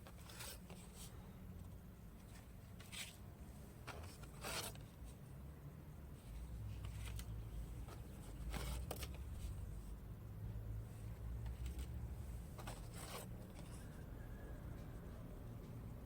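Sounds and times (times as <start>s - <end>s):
scraping rustling handling sounds: 0.0s - 5.3s, 6.1s - 10.0s, 10.9s - 14.0s.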